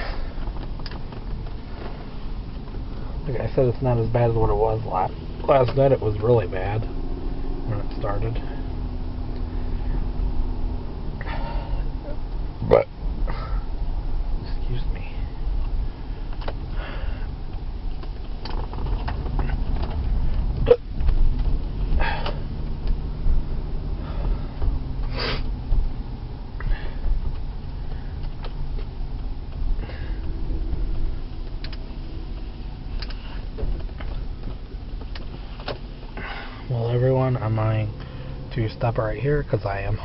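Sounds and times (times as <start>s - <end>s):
low vehicle rumble: 0.0s - 40.0s
man hiccupping: 20.6s - 20.9s.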